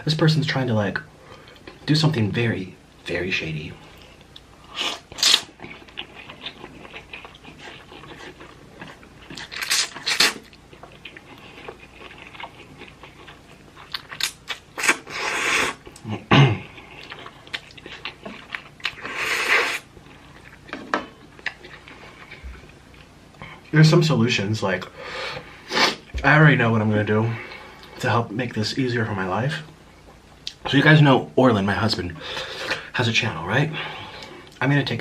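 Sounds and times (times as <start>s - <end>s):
person chewing noodles: 4.0s - 23.7s.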